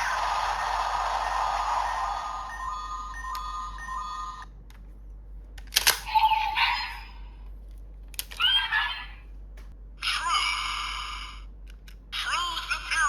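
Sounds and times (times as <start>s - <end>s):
toy electronic sound effect: 0.0s - 4.4s, 6.0s - 7.1s.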